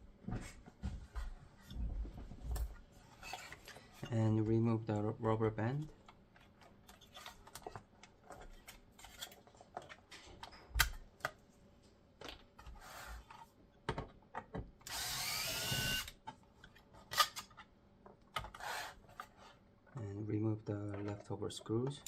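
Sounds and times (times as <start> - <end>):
electric screwdriver running: 14.9 - 16.2.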